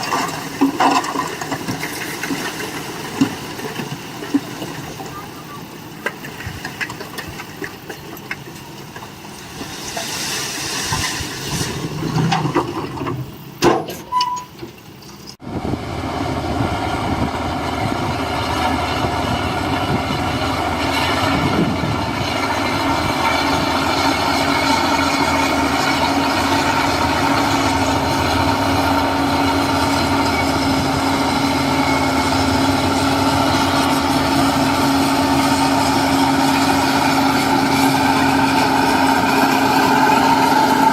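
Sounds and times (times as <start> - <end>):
machinery clatter: 0.0 - 10.1
diesel engine running under load: 14.7 - 40.9.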